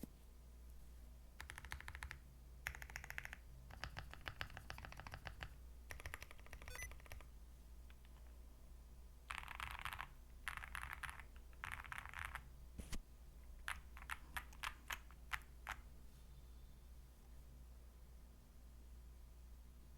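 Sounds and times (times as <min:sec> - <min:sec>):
typing on mechanical keyboard: 0:01.4 - 0:07.3, 0:09.3 - 0:12.5, 0:13.6 - 0:15.8.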